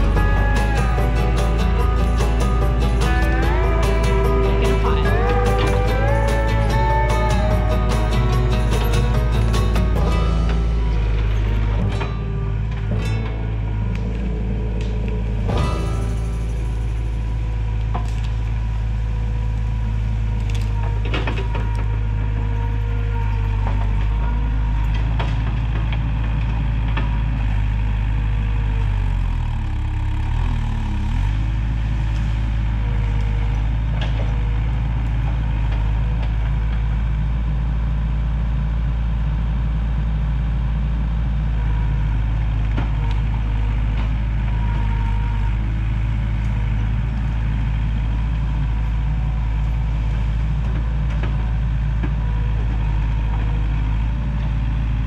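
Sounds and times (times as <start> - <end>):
diesel engine running: 0.0 - 55.0.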